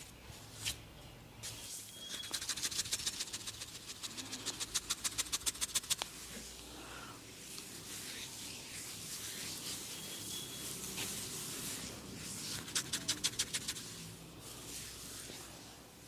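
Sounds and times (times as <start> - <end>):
hands rubbing scalp and hair: 1.5 - 6.5, 7.4 - 15.8.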